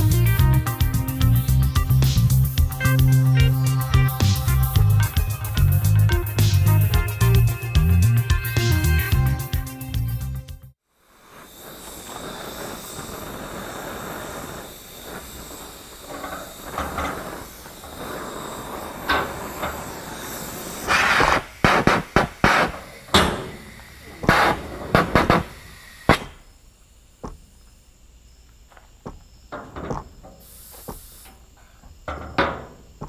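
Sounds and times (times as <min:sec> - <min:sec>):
torch hissing: 0:11.0 - 0:26.5, 0:30.4 - 0:31.4
metallic knocks and clanks: 0:29.5 - 0:30.4, 0:32.0 - 0:33.0.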